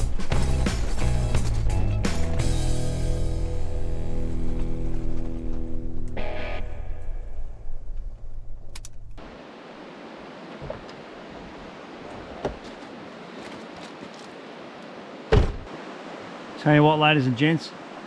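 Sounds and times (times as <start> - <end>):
music: 0.0 - 7.1
road and wind noise: 0.0 - 16.7.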